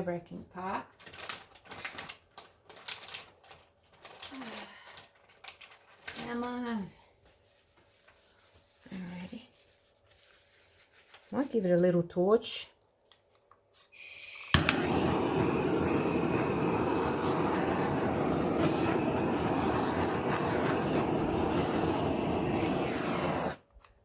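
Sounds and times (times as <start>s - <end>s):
torch igniter click: 14.0s - 23.6s
butane torch flame hissing: 14.0s - 23.7s.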